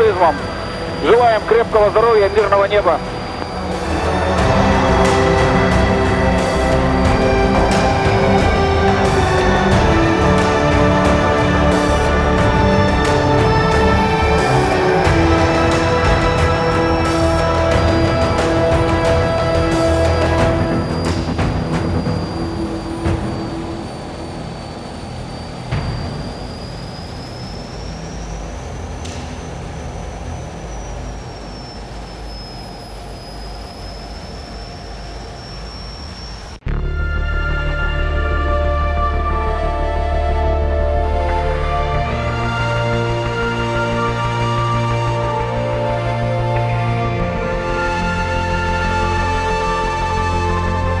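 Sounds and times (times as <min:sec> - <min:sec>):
jet engine whine and roar: 0:00.0 - 0:36.6, 0:39.0 - 0:51.0
sustained chords over low pulse: 0:00.0 - 0:51.0.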